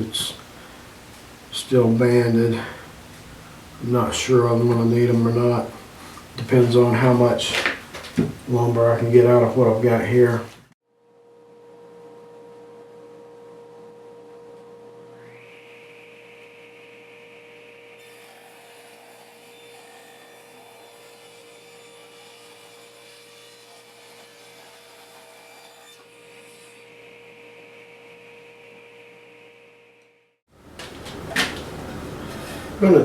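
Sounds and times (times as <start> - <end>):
power tool motor whine: 14.1 - 18.1
wood being cut: 15.1 - 30.0.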